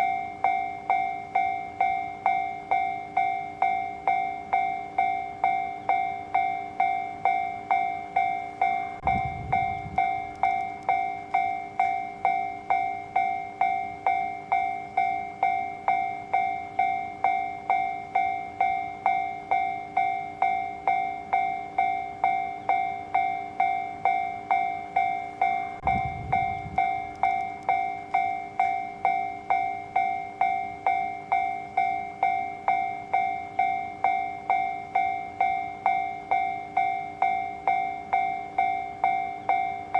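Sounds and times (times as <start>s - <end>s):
level-crossing warning bell: 0.0s - 39.9s
low rumbles: 9.0s - 10.8s, 25.8s - 27.6s.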